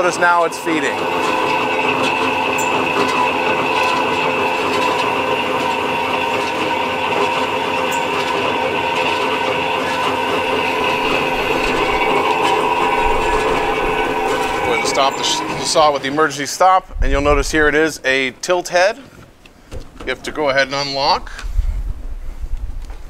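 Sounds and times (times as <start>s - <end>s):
bandsaw cutting metal: 0.0s - 16.6s.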